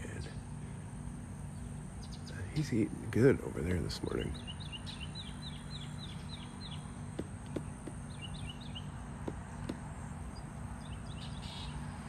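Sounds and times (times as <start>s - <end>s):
low outdoor hum: 0.0s - 12.0s
small bird chirping: 1.4s - 12.0s
woodpecker pecking at wood: 7.0s - 10.2s.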